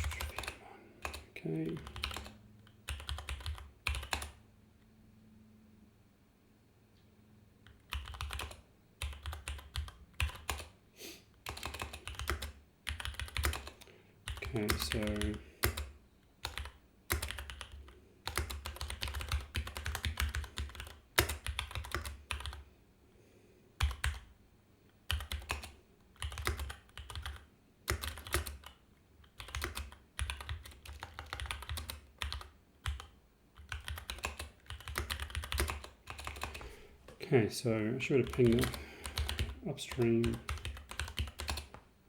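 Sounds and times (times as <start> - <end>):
typing on computer keyboard: 0.0 - 4.4, 7.6 - 10.8, 11.4 - 22.6, 23.8 - 24.3, 25.0 - 36.7, 38.2 - 41.9.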